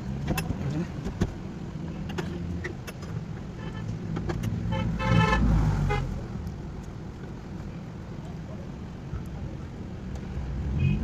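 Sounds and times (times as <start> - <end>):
car horn: 3.6 - 4.0, 4.6 - 6.2, 10.7 - 11.0.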